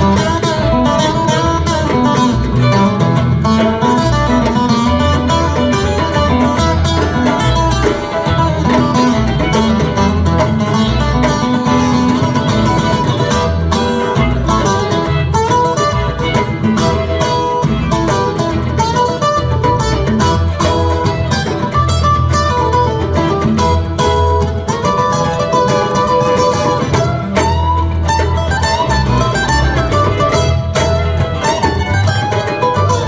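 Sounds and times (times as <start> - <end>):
electric guitar lines: 0.0 - 33.0
rock band playing: 0.0 - 33.0.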